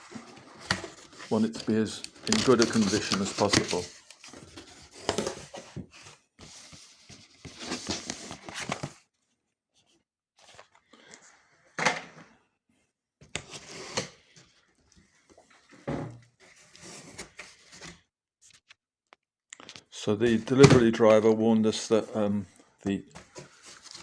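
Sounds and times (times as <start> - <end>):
cardboard rustling and scraping: 0.0 - 9.0, 15.4 - 18.0, 23.2 - 24.0.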